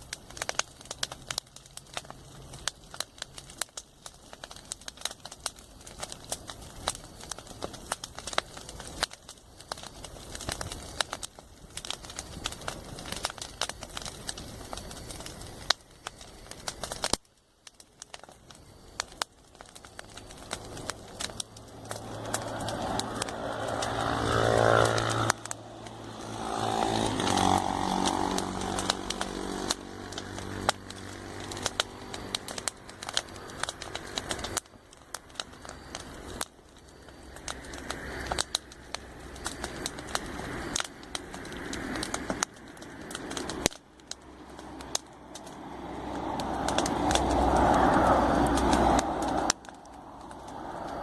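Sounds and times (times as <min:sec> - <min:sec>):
campfire crackling and popping: 0:00.0 - 0:51.0
vehicles passing on road: 0:19.6 - 0:36.4, 0:37.2 - 0:51.0.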